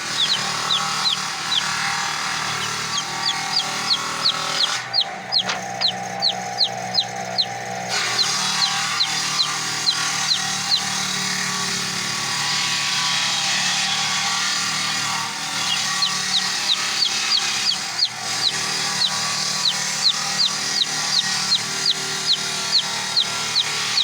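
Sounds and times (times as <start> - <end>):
bird chirping: 0.0 - 12.4, 13.3 - 24.0
steady low hum: 0.0 - 12.4.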